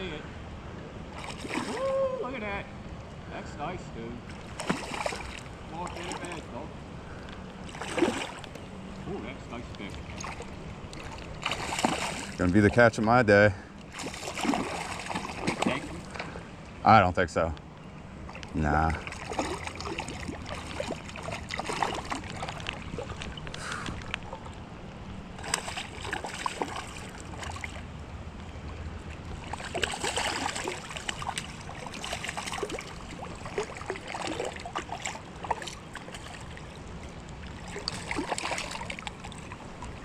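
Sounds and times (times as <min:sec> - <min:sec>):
creek water trickling: 0:00.7 - 0:03.4, 0:04.2 - 0:40.0
splashes in water: 0:01.2 - 0:01.9, 0:04.3 - 0:06.4, 0:07.6 - 0:08.6, 0:10.0 - 0:12.5, 0:13.9 - 0:16.1, 0:19.0 - 0:24.5, 0:25.4 - 0:27.8, 0:29.4 - 0:36.7, 0:37.4 - 0:39.9.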